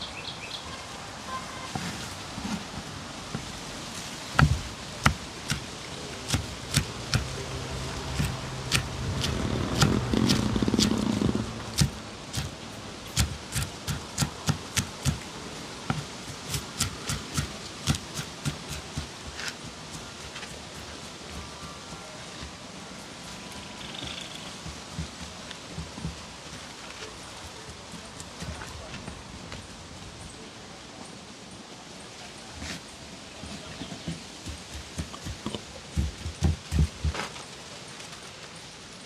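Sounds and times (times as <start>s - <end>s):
noisy rustling: 0.6s - 39.0s
knife chopping: 4.4s - 22.0s, 34.4s - 37.2s.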